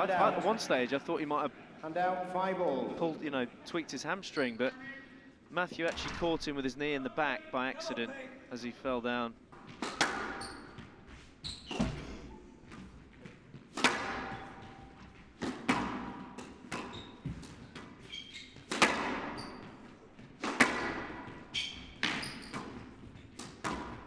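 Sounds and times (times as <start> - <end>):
squash ball hitting rackets and walls: 9.6 - 24.0
shoe squeaks on court floor: 10.3 - 12.2, 16.8 - 18.7, 19.3 - 19.8, 21.5 - 22.9.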